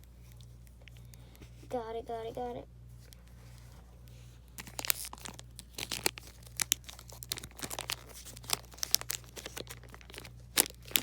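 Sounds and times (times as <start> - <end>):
card pack wrapper crinkling: 4.5 - 11.0.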